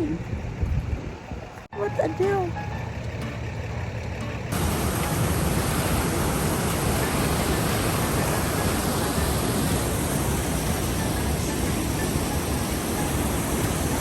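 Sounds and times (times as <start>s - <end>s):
waterfall rushing: 4.5s - 14.0s.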